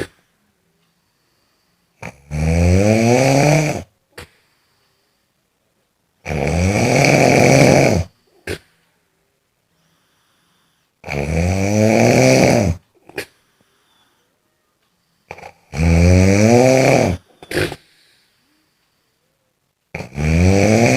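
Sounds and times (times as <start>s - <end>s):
person snoring: 1.3s - 4.3s, 6.2s - 8.7s, 10.0s - 13.4s, 15.2s - 18.6s, 19.9s - 20.9s.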